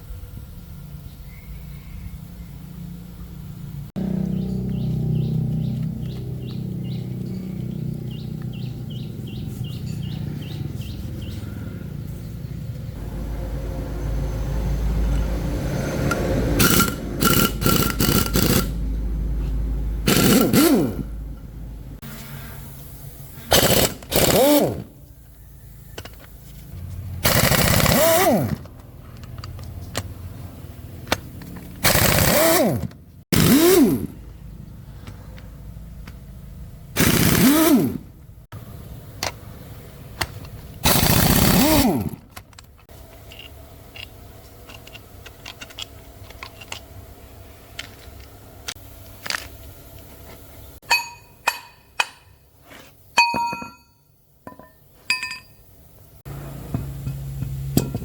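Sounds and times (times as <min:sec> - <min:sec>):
pneumatic impact wrench rattling: 0:16.0 - 0:18.9, 0:20.0 - 0:21.1, 0:23.4 - 0:25.2, 0:27.1 - 0:30.1, 0:31.0 - 0:34.4, 0:37.0 - 0:38.2, 0:40.2 - 0:47.0.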